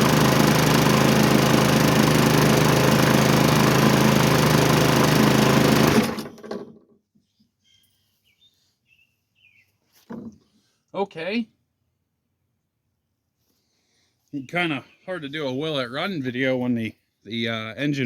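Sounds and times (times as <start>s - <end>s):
lawn mower engine running: 0.0s - 6.7s.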